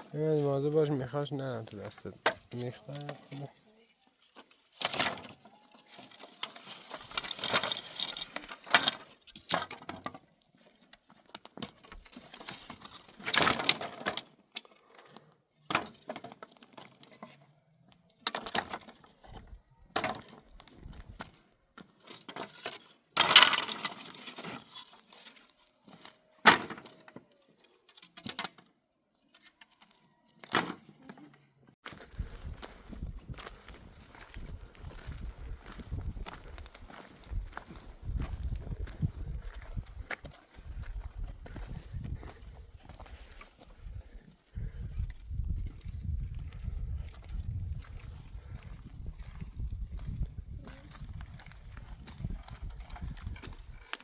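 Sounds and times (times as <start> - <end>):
wood cracking and knocking: 4.8 - 5.5, 6.1 - 10.3, 11.0 - 14.4, 18.2 - 25.3, 26.4 - 27.2.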